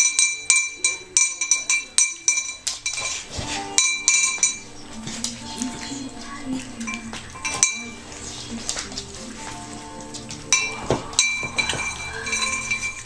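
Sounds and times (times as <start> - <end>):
background music: 0.0 - 13.0
metallic clinks with ringing tone: 3.8 - 4.7, 6.9 - 8.0, 10.5 - 13.0.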